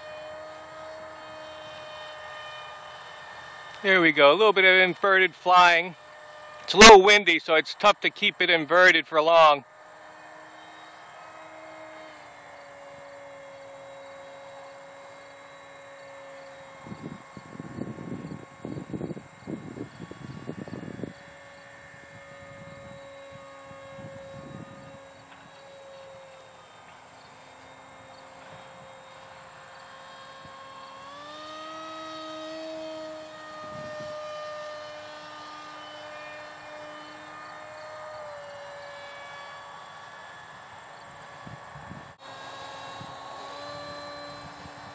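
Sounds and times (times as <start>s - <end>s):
model jet motor whining: 0.0s - 44.9s
wind buffeting microphone: 16.8s - 25.6s, 33.5s - 34.7s, 41.0s - 44.9s.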